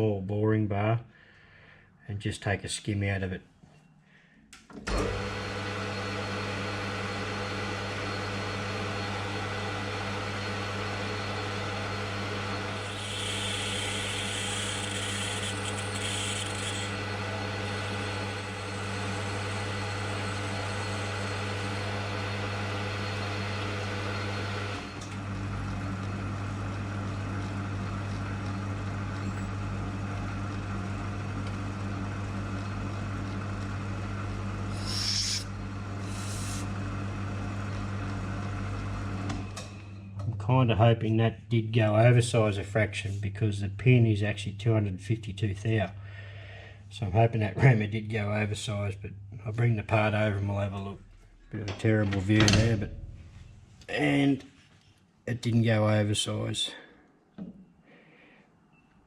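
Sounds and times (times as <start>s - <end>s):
drill motor humming: 10.3s - 24.9s, 34.7s - 36.8s
reamer cutting brass: 12.5s - 22.3s, 34.7s - 36.7s.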